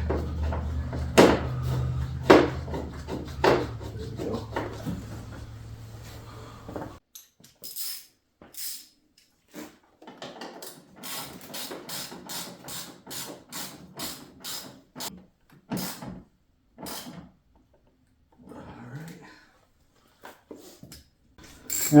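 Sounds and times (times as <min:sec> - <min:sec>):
steady low hum: 0:00.0 - 0:07.0
hand ratchet clicking: 0:10.6 - 0:14.7.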